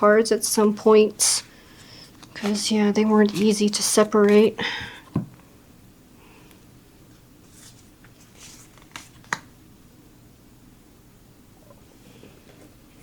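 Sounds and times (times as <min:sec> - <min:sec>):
cards sliding: 0:02.1 - 0:04.5, 0:07.5 - 0:09.5.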